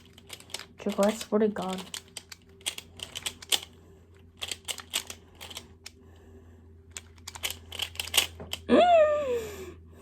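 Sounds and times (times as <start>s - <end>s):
puzzle cube clicking: 0.0s - 3.8s, 4.4s - 6.0s, 6.9s - 8.7s.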